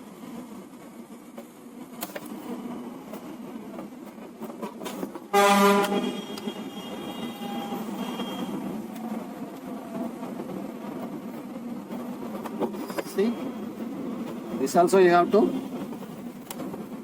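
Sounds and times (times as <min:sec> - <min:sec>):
vehicle horn honking: 0:05.3 - 0:08.6.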